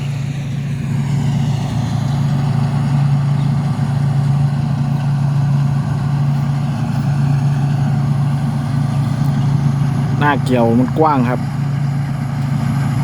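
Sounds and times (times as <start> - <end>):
combine harvester diesel engine: 0.0 - 13.0
machinery noise: 0.0 - 13.0.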